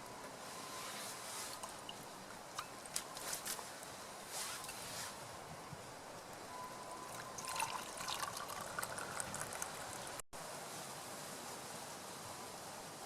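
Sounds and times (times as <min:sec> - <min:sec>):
faint thin steady tone: 0:00.0 - 0:10.2
liquid trickling: 0:01.4 - 0:03.2, 0:06.9 - 0:10.2.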